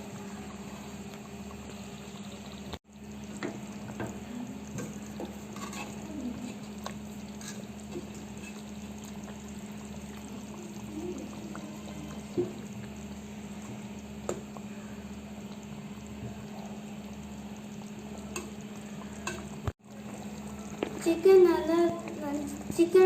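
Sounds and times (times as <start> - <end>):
chicken sizzling in a pot: 0.0 - 23.0.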